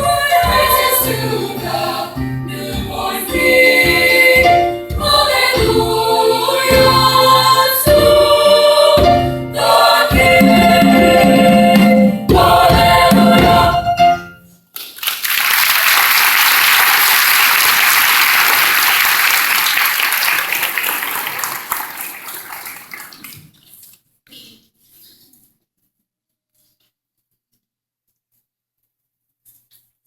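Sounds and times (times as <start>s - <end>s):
choir singing: 0.0s - 14.1s
audience applauding: 14.8s - 23.4s.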